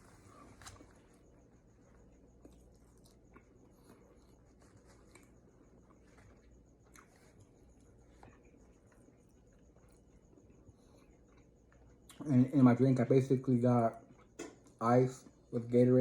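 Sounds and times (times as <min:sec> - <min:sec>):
soft chewing: 0:00.0 - 0:15.8.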